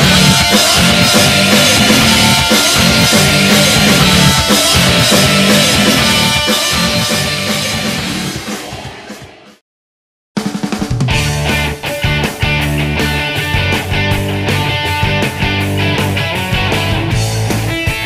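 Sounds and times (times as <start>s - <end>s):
distorted guitar: 0.0s - 9.6s, 11.0s - 18.0s
driving drum kit: 0.0s - 9.6s, 10.4s - 18.0s
rock music: 0.0s - 9.6s, 10.4s - 18.0s.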